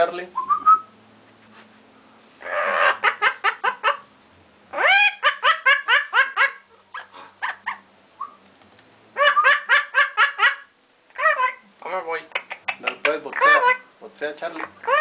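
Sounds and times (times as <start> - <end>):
parrot calling: 2.4 - 4.1, 4.7 - 8.4, 9.2 - 15.0.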